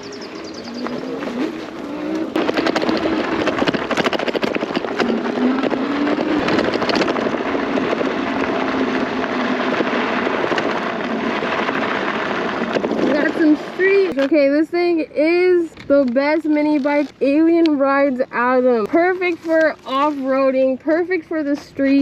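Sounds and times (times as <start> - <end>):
electric motor whine: 0.0 - 14.2
tyres crackling on gravel: 0.0 - 22.0.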